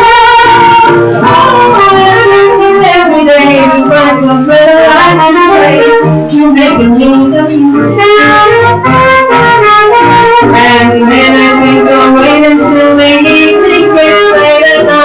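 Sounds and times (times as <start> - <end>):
swing jazz band with horns: 0.2 - 15.0.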